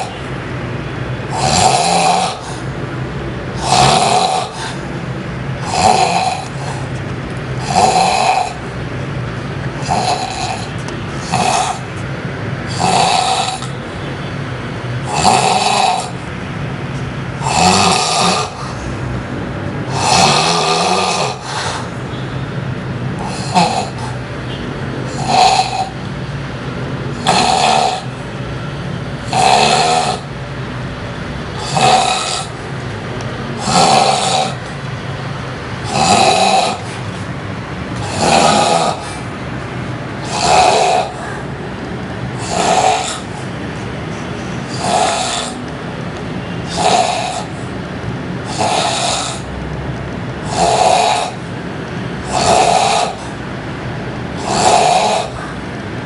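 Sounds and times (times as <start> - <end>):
person snoring loudly: 0.0 - 0.2, 1.3 - 2.7, 3.6 - 4.9, 5.6 - 6.9, 7.6 - 8.6, 9.7 - 11.9, 12.7 - 13.8, 15.0 - 16.2, 17.4 - 18.8, 19.9 - 22.0, 23.2 - 24.2, 25.1 - 26.0, 27.1 - 28.2, 29.2 - 30.3, 31.6 - 32.6, 33.6 - 34.8, 35.8 - 37.1, 38.0 - 39.3, 40.2 - 41.5, 42.3 - 43.5, 44.6 - 45.6, 46.6 - 47.7, 48.4 - 49.5, 50.4 - 51.5, 52.2 - 53.4, 54.3 - 55.6.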